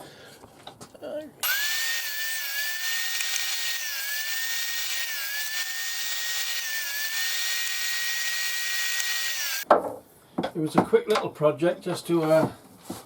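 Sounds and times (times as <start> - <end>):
table saw cutting wood: 1.4 - 9.6.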